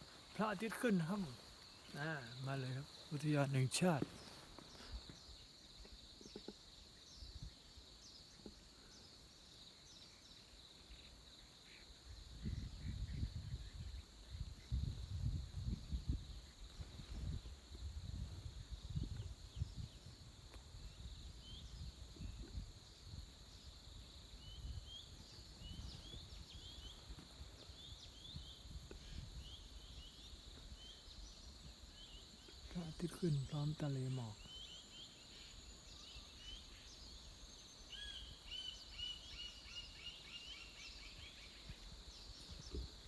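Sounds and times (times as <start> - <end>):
insects chirring: 0.0 - 43.0
wind buffeting microphone: 12.1 - 29.6
bird chirps: 24.4 - 42.9.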